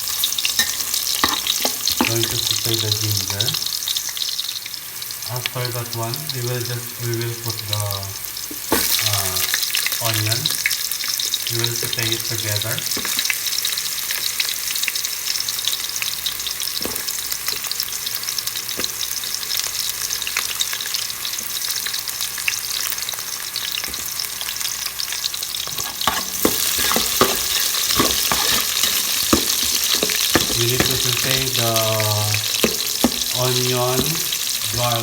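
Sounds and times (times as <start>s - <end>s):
food sizzling in oil: 0.0s - 35.0s
utensil clicking against pan: 25.7s - 34.4s.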